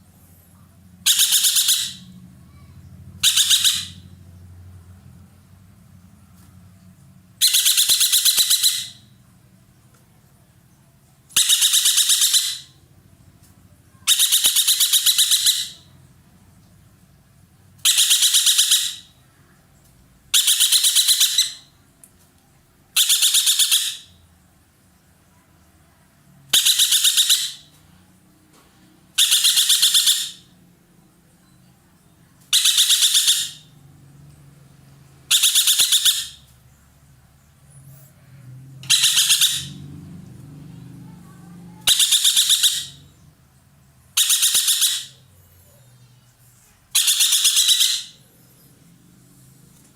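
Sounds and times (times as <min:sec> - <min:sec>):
bird calling in rapid harsh bursts: 0:01.0 - 0:04.2, 0:07.4 - 0:09.2, 0:11.3 - 0:12.9, 0:13.9 - 0:16.0, 0:17.8 - 0:19.4, 0:20.3 - 0:21.8, 0:22.9 - 0:24.2, 0:26.5 - 0:27.8, 0:29.1 - 0:30.6, 0:32.4 - 0:33.8, 0:35.2 - 0:36.6, 0:38.8 - 0:39.9, 0:40.6 - 0:43.3, 0:44.0 - 0:45.6, 0:46.9 - 0:48.7.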